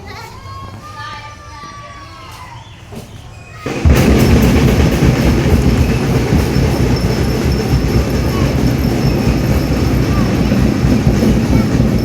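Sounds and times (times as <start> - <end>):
marching drum band music: 3.6 - 12.0.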